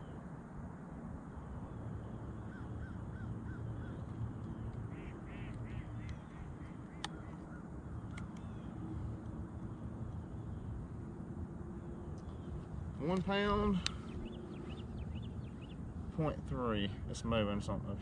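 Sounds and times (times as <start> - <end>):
low rumble of wind: 0.0 - 18.0
sharp clicks: 6.9 - 7.4, 8.0 - 8.5.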